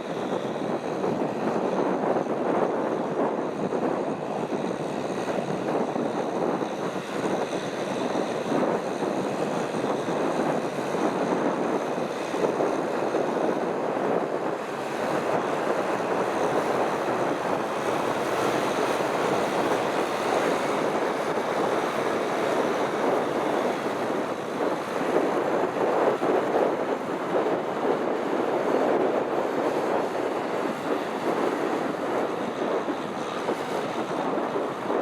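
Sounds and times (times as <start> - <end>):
water and mud churning: 0.0 - 35.0
tractor engine rumbling: 11.6 - 28.8.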